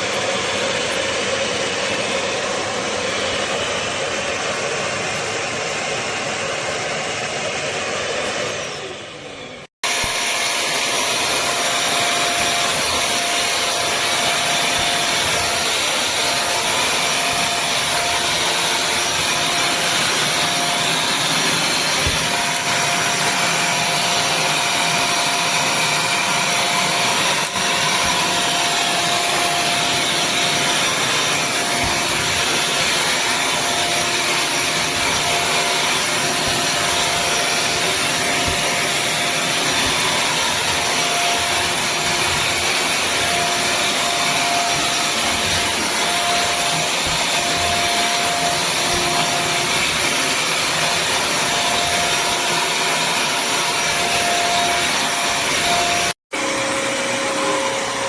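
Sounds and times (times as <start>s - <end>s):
vacuum motor running: 0.0s - 58.0s.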